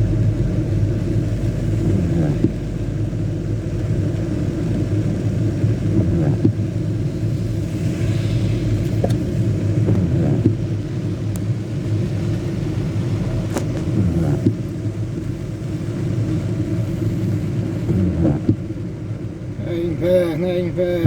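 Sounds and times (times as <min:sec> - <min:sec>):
raindrop clicks: 0:00.0 - 0:07.1, 0:09.8 - 0:19.0
heavy rain pouring: 0:00.0 - 0:21.0.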